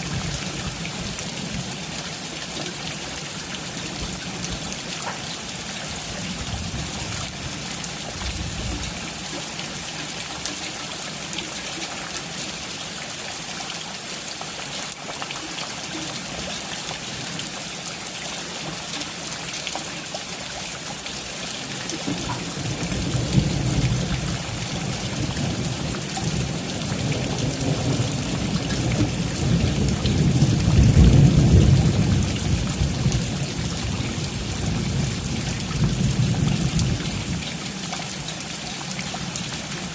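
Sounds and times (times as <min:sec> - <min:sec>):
rain hissing and pattering: 0:00.0 - 0:39.9
thunder rumbling: 0:22.1 - 0:37.4.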